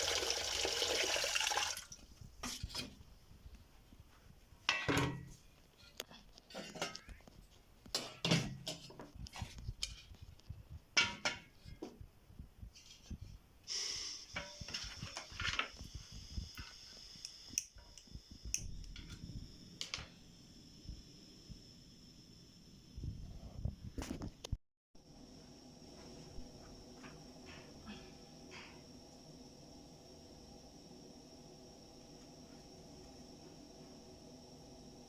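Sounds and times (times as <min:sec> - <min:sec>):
water running: 0:00.0 - 0:02.2.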